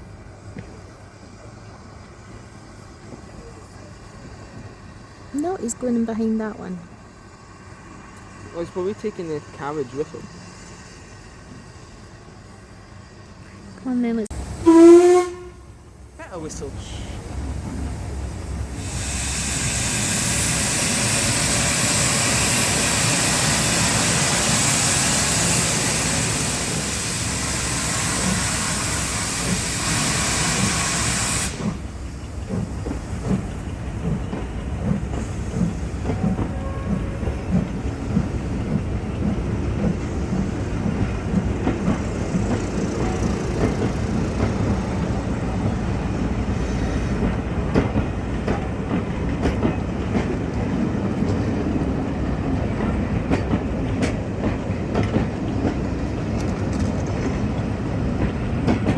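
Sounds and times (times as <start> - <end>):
train running with knocking beat: 0.0 - 58.9
steam hissing from locomotive: 14.4 - 56.2.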